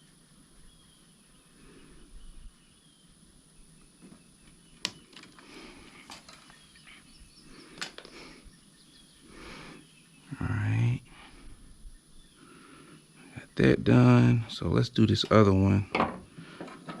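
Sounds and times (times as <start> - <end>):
bird chirps: 6.3 - 11.0.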